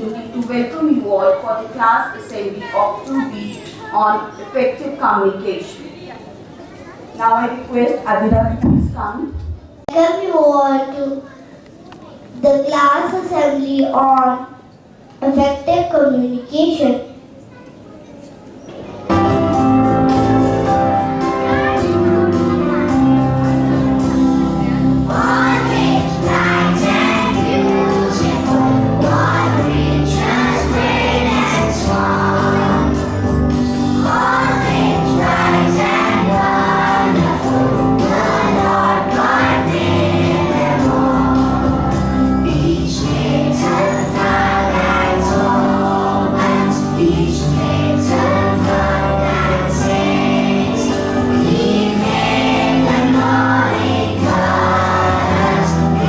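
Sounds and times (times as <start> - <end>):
instrumental accompaniment: 18.8 - 56.0
group singing: 25.0 - 56.0.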